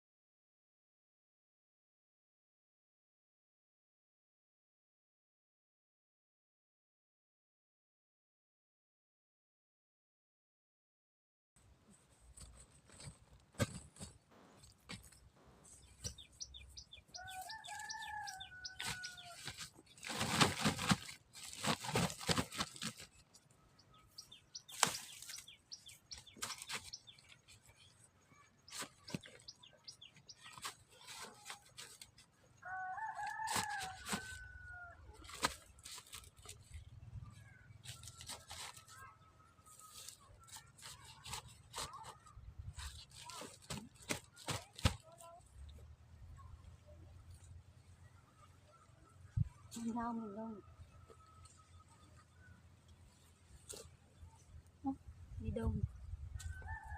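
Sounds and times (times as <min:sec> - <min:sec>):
loud rustling noise: 0:12.3 - 0:23.4, 0:24.1 - 0:28.1, 0:28.7 - 0:32.3
rooster crowing: 0:17.2 - 0:19.4, 0:32.6 - 0:35.1, 0:56.4 - 0:56.9.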